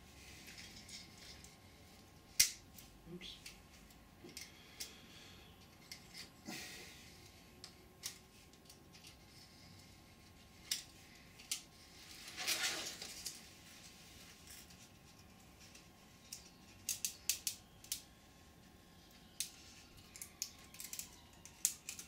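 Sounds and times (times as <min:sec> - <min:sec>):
rustling scrapes: 0:11.9 - 0:14.9.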